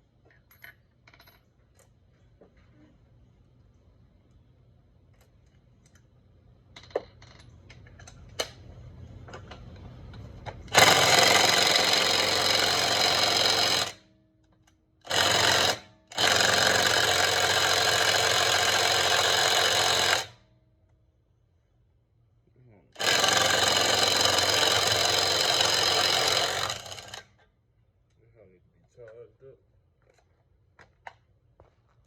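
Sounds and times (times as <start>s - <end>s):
power tool running: 10.7s - 14.0s, 15.1s - 20.4s, 23.0s - 27.2s.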